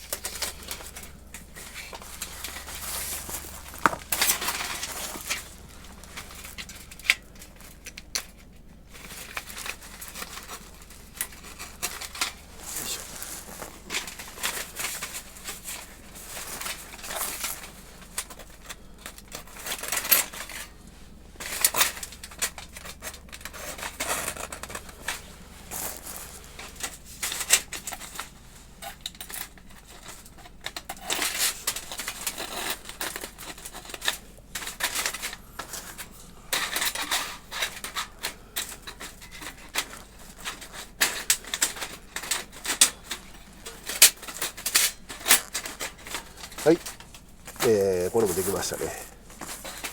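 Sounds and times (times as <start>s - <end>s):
sheet metal clinks and rattles: 26.6s - 47.6s.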